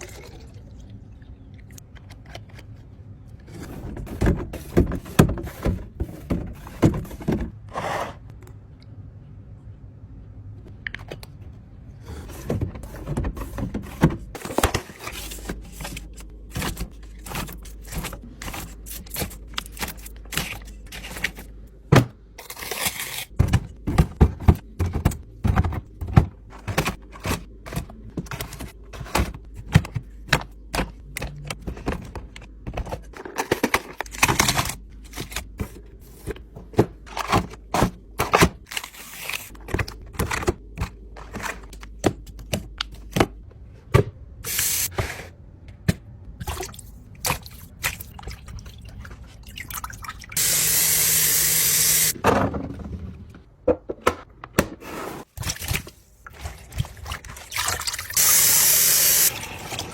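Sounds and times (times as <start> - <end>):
packaging knocks and scrapes: 3.4 - 8.2.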